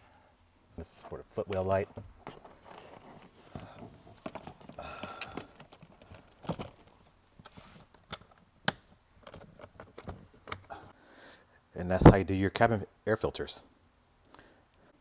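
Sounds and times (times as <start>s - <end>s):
plastic trim clicks and handling: 4.3s - 10.7s.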